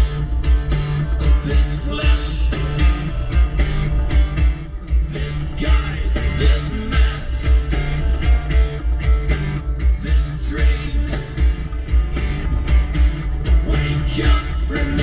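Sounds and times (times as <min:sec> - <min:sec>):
rock song with singing: 0:00.0 - 0:15.0.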